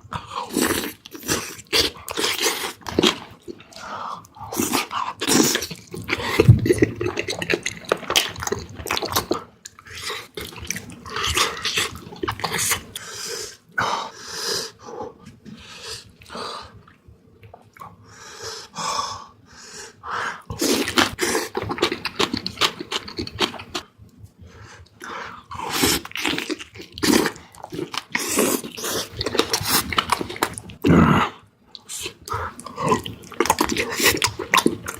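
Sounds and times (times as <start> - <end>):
wet chewing and lip-smacking: 0.5 - 13.1, 20.5 - 25.0, 25.7 - 30.8, 31.7 - 34.9.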